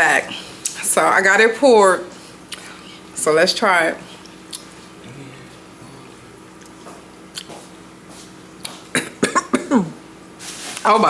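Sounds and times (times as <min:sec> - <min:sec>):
lip smacks and mouth clicks: 0:02.5 - 0:02.7, 0:04.2 - 0:04.7, 0:06.5 - 0:07.6
person sipping a drink: 0:04.2 - 0:06.8
swallowing sounds: 0:04.2 - 0:07.5.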